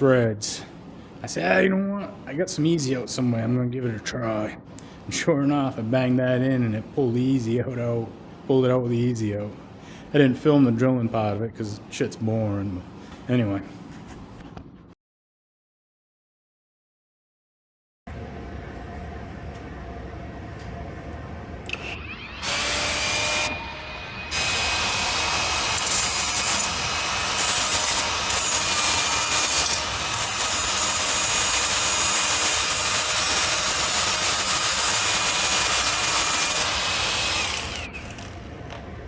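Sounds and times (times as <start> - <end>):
power tool whine: 21.7 - 38.5.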